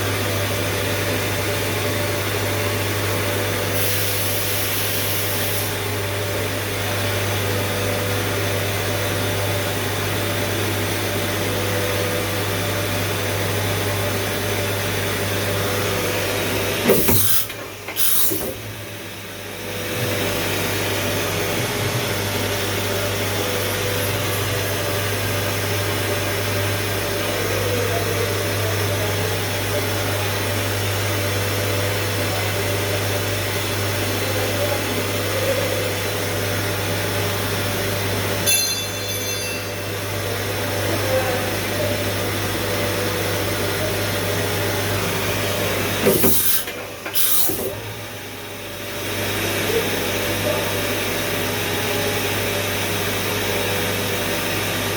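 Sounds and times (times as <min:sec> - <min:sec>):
clicking and ringing: 0:38.4 - 0:40.6.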